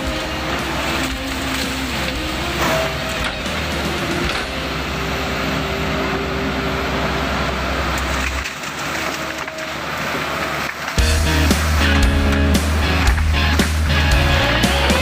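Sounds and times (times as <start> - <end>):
background music: 0.0 - 8.0, 11.0 - 15.0
excavator diesel engine: 0.0 - 15.0.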